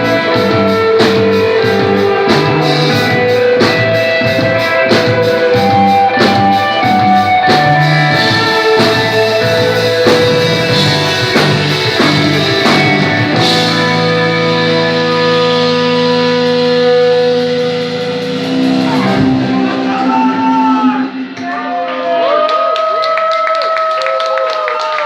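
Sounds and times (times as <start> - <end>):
drum hits: 0.0 - 14.2
rock band playing: 0.0 - 25.0.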